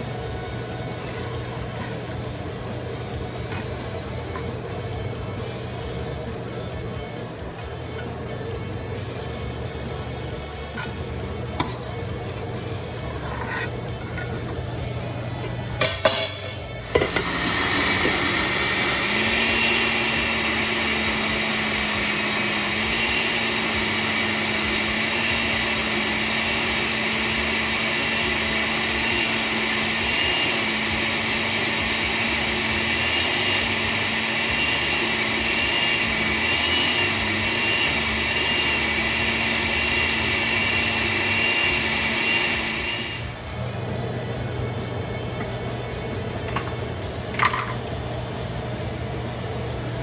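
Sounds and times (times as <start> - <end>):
electric blender running: 0.0 - 50.0.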